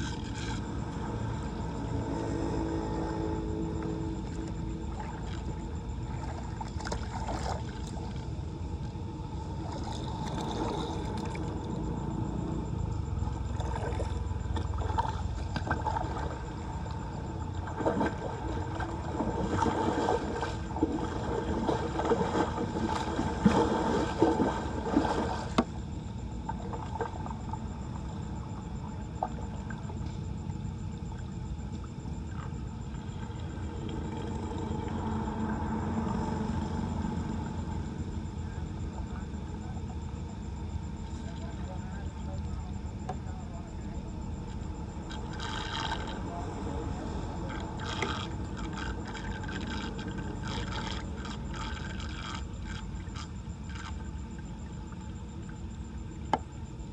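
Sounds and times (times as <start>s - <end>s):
water gurgling into drain: 9.3s - 12.1s, 13.2s - 25.7s, 44.9s - 56.4s
splashing and clattering: 17.6s - 25.7s.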